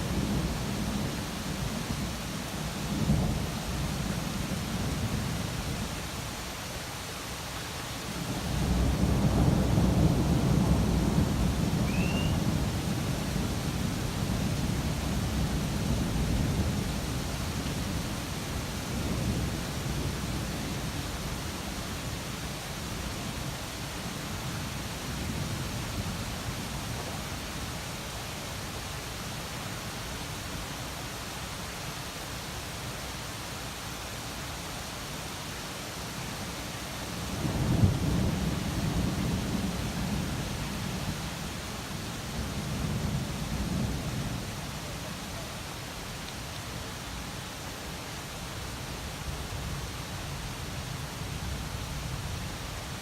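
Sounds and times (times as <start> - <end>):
steady rain hiss: 0.0 - 53.0
rolling thunder: 8.2 - 21.1, 37.2 - 41.4.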